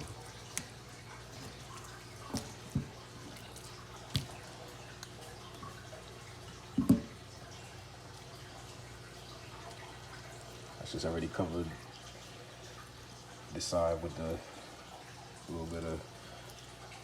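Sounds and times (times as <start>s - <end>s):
wet slaps of raw steak: 0.0s - 0.8s, 4.1s - 4.4s
low steady hum: 0.0s - 17.0s.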